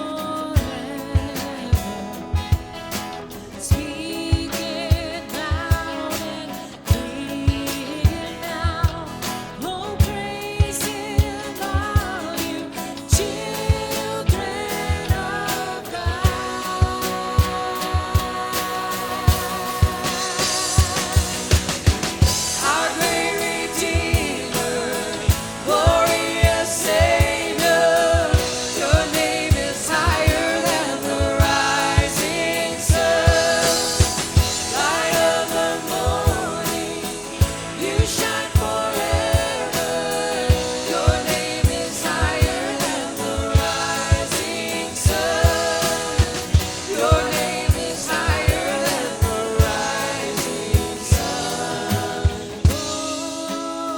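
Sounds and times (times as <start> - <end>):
worship song with singers: 0.0 - 53.9.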